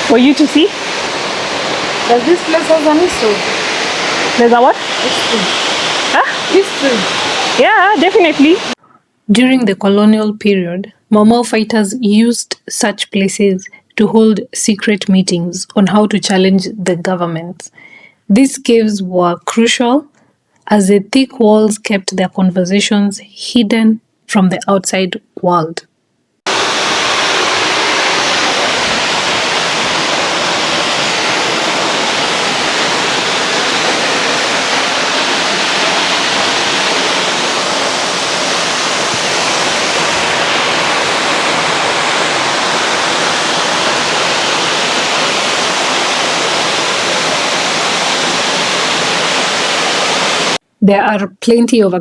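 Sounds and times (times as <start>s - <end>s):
waterfall roaring: 0.0s - 8.8s, 26.5s - 50.6s.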